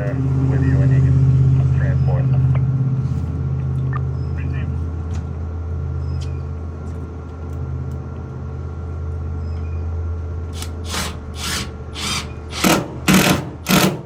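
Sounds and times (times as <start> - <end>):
vehicle engine idling: 0.0 - 14.0.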